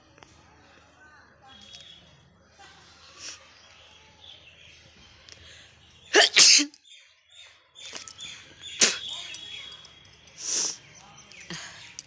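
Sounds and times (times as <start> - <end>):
person sneezing: 6.2 - 6.8.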